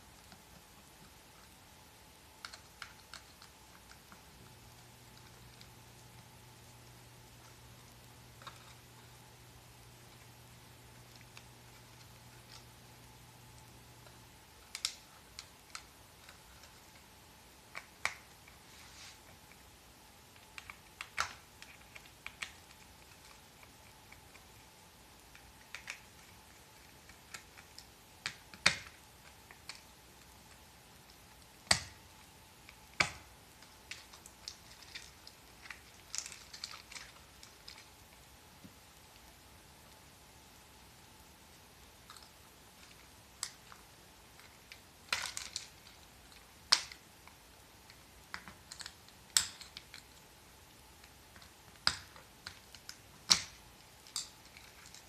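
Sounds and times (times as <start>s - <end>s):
small parts clicking and tapping: 2.3s - 10.4s, 13.4s - 17.1s, 20.3s - 39.4s, 41.9s - 50.3s, 51.0s - 55.0s.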